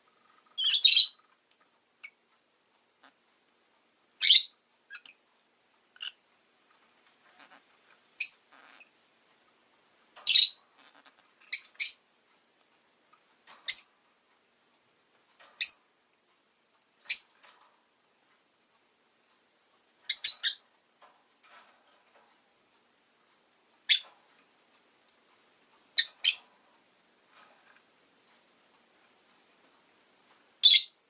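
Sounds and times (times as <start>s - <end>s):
lovebird chirps: 0.5s - 1.2s, 4.2s - 5.2s, 8.2s - 8.9s, 10.2s - 12.1s, 13.6s - 14.0s, 15.6s - 15.9s, 17.0s - 17.4s, 20.1s - 20.7s, 23.8s - 24.1s, 26.0s - 26.5s, 30.6s - 31.0s.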